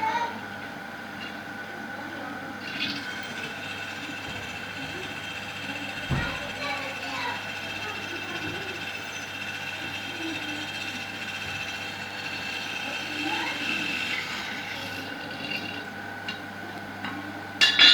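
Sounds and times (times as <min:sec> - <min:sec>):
electric drill motor whining: 0:02.6 - 0:15.9.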